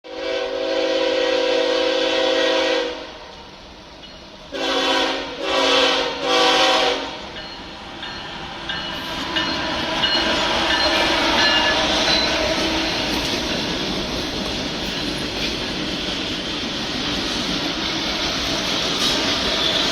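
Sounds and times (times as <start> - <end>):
locomotive air horn blasts: 0.0 - 3.5, 4.5 - 7.4
train rumble passing: 0.1 - 19.9.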